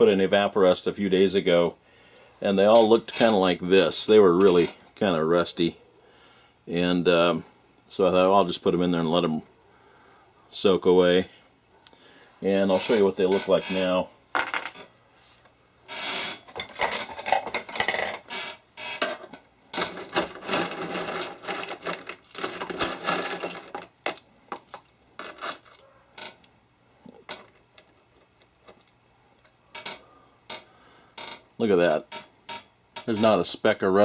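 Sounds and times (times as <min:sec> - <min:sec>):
screws and bolts rattling: 0:02.6 - 0:04.8, 0:12.7 - 0:14.9, 0:15.9 - 0:26.5, 0:27.2 - 0:28.0, 0:29.8 - 0:33.4.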